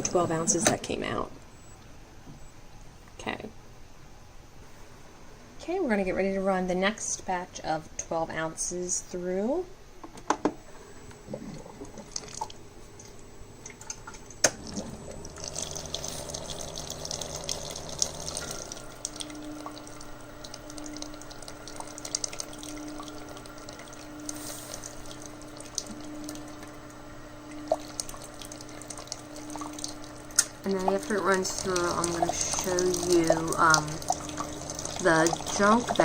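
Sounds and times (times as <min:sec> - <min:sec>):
coffee maker pump hum: 0:00.0 - 0:02.6, 0:10.2 - 0:36.0
liquid dripping into cup: 0:11.8 - 0:36.0.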